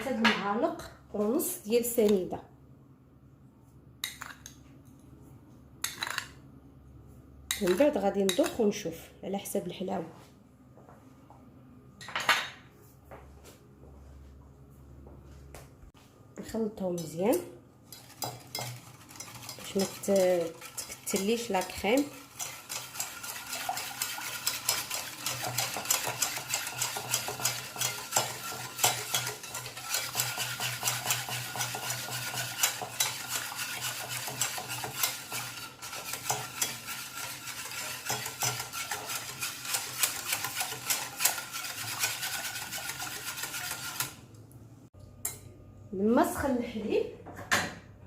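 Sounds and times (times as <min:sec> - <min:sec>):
utensil scraping metal saucepan: 0:17.9 - 0:44.2.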